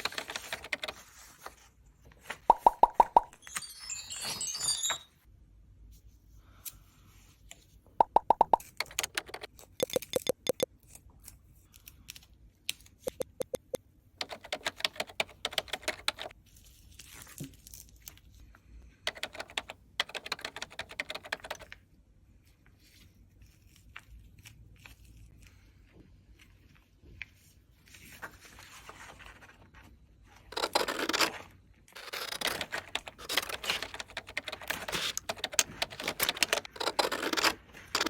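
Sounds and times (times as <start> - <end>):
bouncy clicks and pops: 2.5 - 3.4, 8.0 - 10.7, 13.1 - 13.8.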